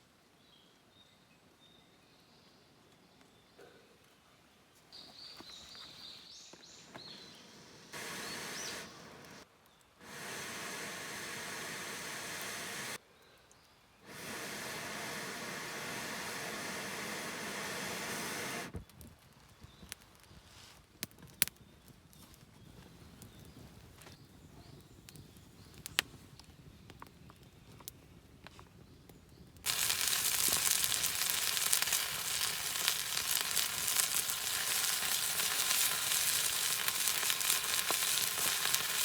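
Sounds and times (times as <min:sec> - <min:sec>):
high bird chirps: 0:06.8 - 0:09.4
steady hiss: 0:07.2 - 0:13.0, 0:14.0 - 0:18.8, 0:29.7 - 0:39.0.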